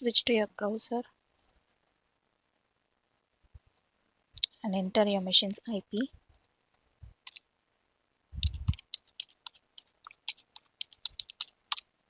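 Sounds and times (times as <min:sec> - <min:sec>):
computer keyboard typing: 0:08.4 - 0:11.8.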